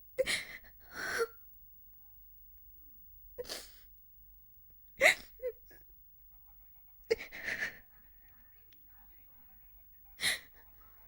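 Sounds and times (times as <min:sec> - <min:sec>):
woman sobbing: 0:05.0 - 0:05.7, 0:07.1 - 0:07.8.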